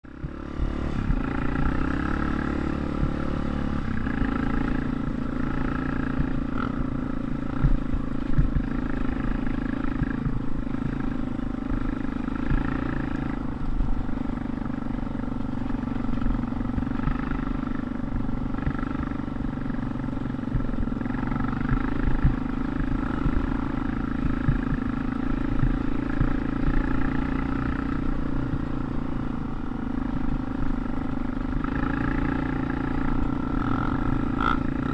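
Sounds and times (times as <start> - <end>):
short low thumps: 0.0 - 4.0, 6.1 - 8.8, 9.9 - 11.8, 20.4 - 21.0, 21.6 - 26.4
dirt bike engine running: 0.0 - 34.9.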